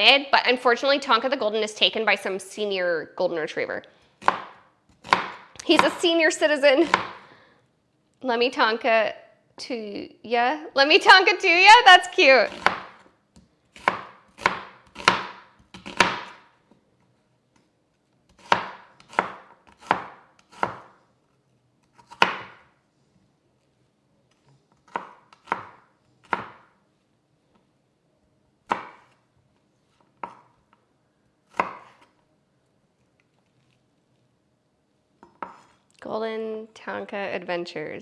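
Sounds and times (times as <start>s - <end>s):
knife chopping on cutting board: 4.2s - 6.0s, 6.8s - 7.3s, 12.5s - 13.1s, 13.8s - 16.6s, 18.3s - 21.0s, 21.9s - 22.7s, 24.8s - 26.7s, 28.7s - 29.2s, 30.2s - 30.6s, 31.5s - 32.1s, 35.2s - 35.8s.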